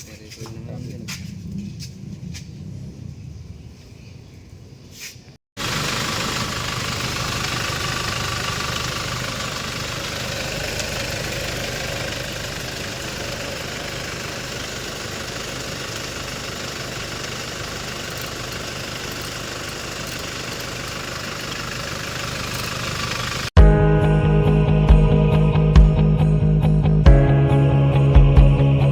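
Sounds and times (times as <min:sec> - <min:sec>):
diesel engine idling: 0:05.6 - 0:23.5.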